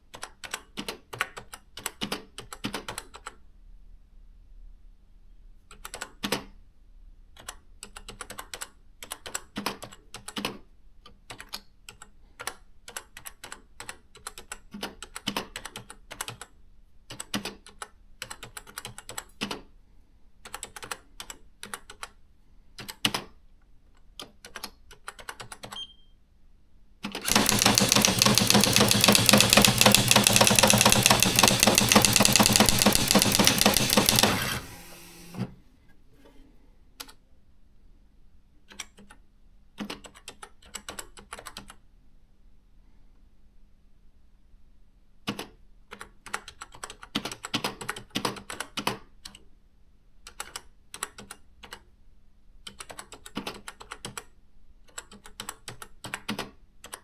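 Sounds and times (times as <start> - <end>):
electronic typewriter keystrokes: 27.2 - 35.5
rapid typewriter print strikes: 27.2 - 35.5.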